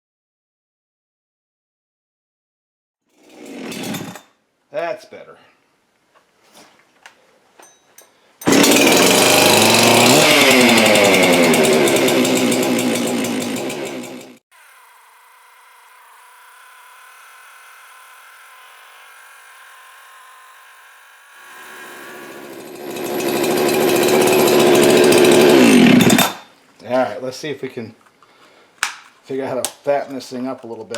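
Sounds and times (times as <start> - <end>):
chainsaw revving: 3.1 - 4.2, 8.4 - 14.4, 21.4 - 26.4.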